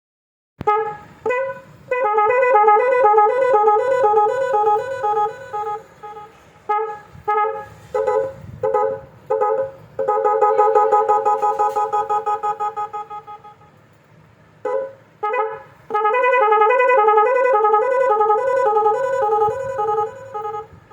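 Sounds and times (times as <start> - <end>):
electronic vehicle horn warbling: 0.6 - 13.8, 14.6 - 20.9.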